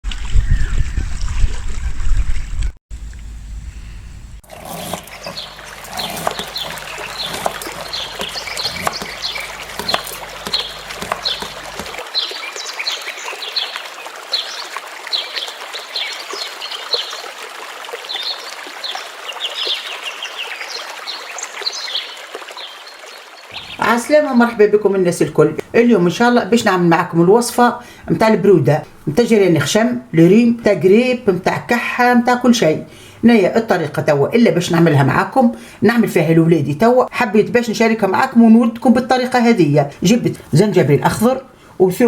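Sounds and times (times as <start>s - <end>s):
low hum: 0.1s - 4.4s
birds chirping: 3.0s - 17.3s, 18.0s - 25.7s
trickling water: 4.4s - 35.0s.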